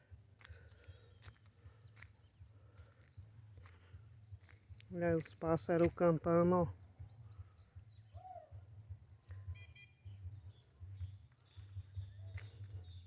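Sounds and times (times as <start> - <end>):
birds chirping: 4.0 - 7.9.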